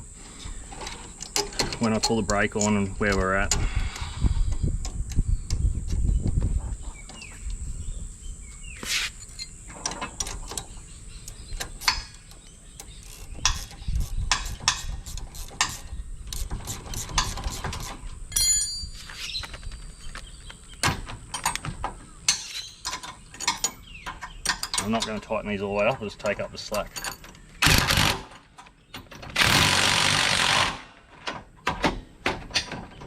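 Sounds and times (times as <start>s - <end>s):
ratchet wrench clicking: 12.8s - 17.6s.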